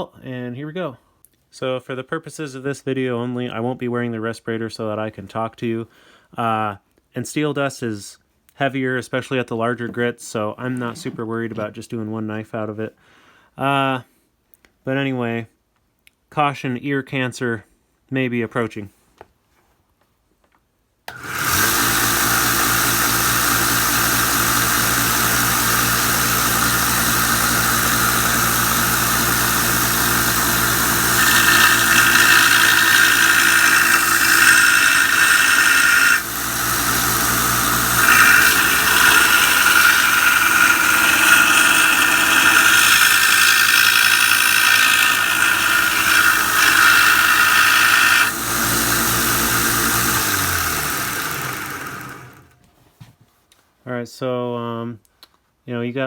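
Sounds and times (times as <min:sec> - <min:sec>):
steel blade grinding on belt: 0:21.1 - 0:52.5
belt grinder running: 0:21.1 - 0:52.6.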